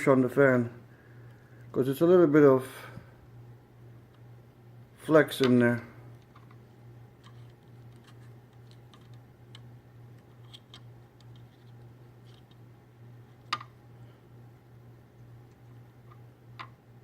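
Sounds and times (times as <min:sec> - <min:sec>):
steady low hum: 0:00.0 - 0:17.0
small fan clicking: 0:07.2 - 0:12.7, 0:15.1 - 0:16.9.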